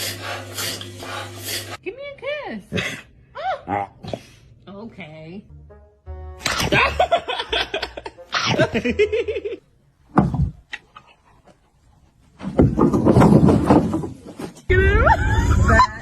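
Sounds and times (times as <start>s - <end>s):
person laughing: 6.4s - 9.6s, 14.9s - 16.0s.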